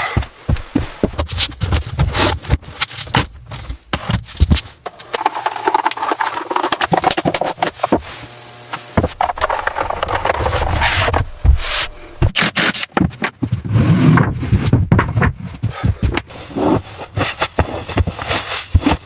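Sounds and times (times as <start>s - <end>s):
irregular scraping: 9.0s - 19.0s.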